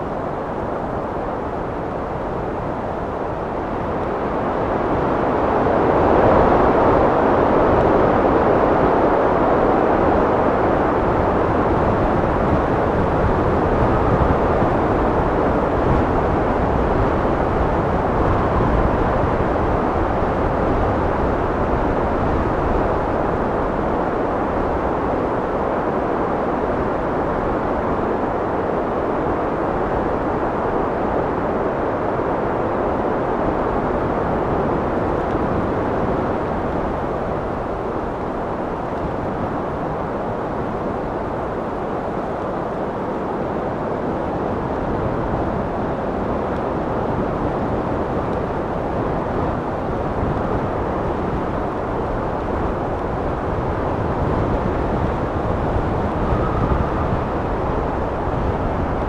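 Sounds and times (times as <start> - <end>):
wind blowing: 32.5 - 59.0.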